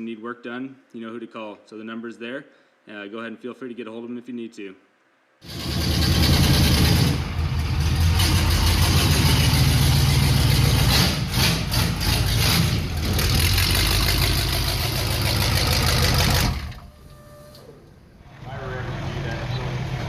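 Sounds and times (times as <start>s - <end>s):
diesel truck engine running: 5.5s - 17.2s, 17.8s - 20.0s.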